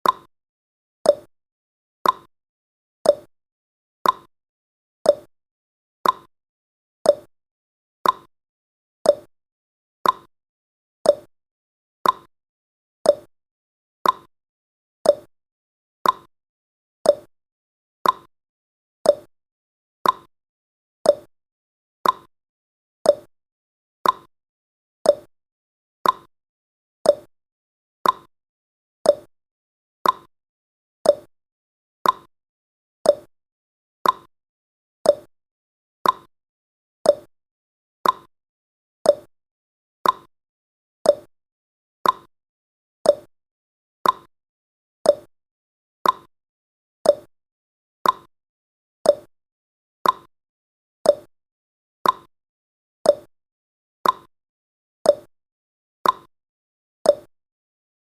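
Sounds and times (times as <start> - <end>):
clock tick-tock: 0.0 - 0.3, 1.1 - 1.3, 2.0 - 2.3, 3.1 - 3.3, 4.0 - 4.3, 5.1 - 5.3, 6.0 - 6.3, 7.1 - 7.3, 8.0 - 8.3, 9.1 - 9.3, 10.0 - 10.3, 11.1 - 11.3, 12.0 - 12.3, 13.1 - 13.3, 14.0 - 14.3, 15.0 - 15.3, 16.0 - 16.3, 17.0 - 17.3, 18.0 - 18.3, 19.0 - 19.3, 20.0 - 20.3, 21.0 - 21.3, 22.0 - 22.3, 23.0 - 23.3, 24.0 - 24.3, 25.0 - 25.3, 26.0 - 26.3, 27.0 - 27.3, 28.0 - 28.3, 29.0 - 29.3, 30.0 - 30.3, 31.0 - 31.3, 32.0 - 32.3, 33.0 - 33.3, 34.0 - 34.3, 35.0 - 35.3, 36.0 - 36.3, 37.0 - 37.3, 38.0 - 38.3, 39.0 - 39.3, 40.0 - 40.3, 41.0 - 41.3, 42.0 - 42.3, 43.0 - 43.3, 44.0 - 44.3, 45.0 - 45.3, 46.0 - 46.3, 47.0 - 47.3, 48.0 - 48.3, 49.0 - 49.3, 50.0 - 50.3, 51.1 - 51.3, 52.0 - 52.3, 53.1 - 53.3, 54.0 - 54.3, 55.1 - 55.3, 56.0 - 56.3, 57.1 - 57.3.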